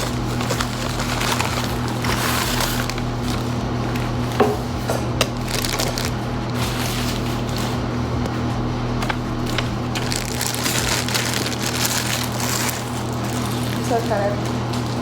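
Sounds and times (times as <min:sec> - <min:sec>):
packaging rustling and crinkling: 0:00.0 - 0:04.7, 0:05.4 - 0:08.4, 0:09.0 - 0:15.0
steady low hum: 0:00.0 - 0:15.0.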